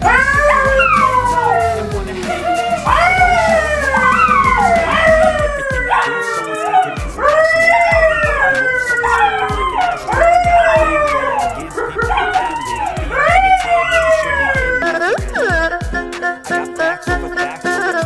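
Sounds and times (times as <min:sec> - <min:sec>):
background music: 0:00.0 - 0:18.0
dog howling: 0:02.4 - 0:15.9.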